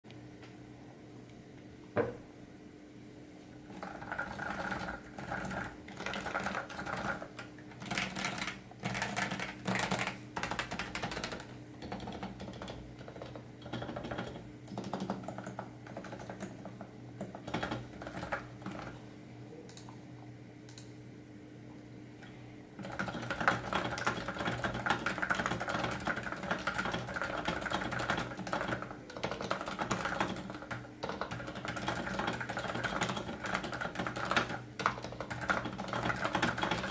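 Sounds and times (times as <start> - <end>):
typing on keyboard: 3.8 - 18.9, 22.8 - 36.9.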